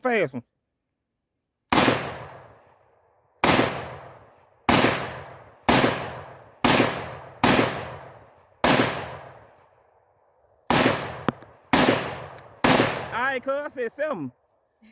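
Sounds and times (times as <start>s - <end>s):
pistol shots with ringing tail: 1.7s - 2.7s, 3.4s - 9.7s, 10.7s - 13.2s.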